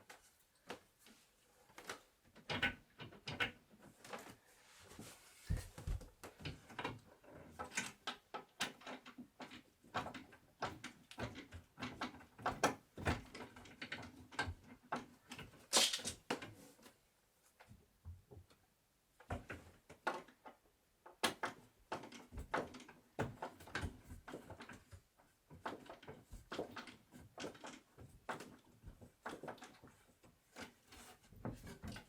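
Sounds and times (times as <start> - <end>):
wooden knocks and clatter: 5.5 - 15.6, 19.2 - 32.0.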